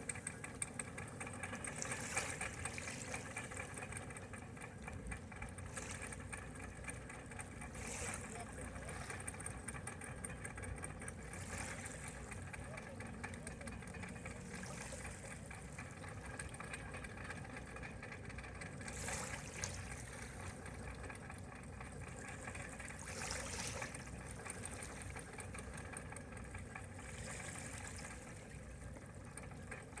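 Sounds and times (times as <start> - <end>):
boat engine idling: 0.0 - 30.0.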